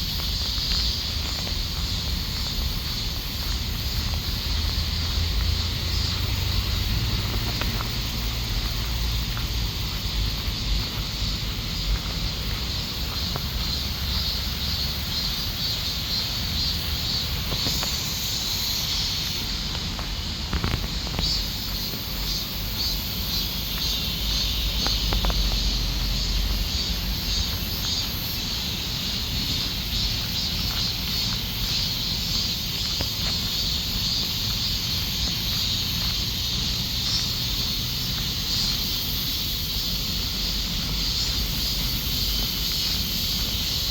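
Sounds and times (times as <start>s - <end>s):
cicadas buzzing: 0.0s - 43.9s.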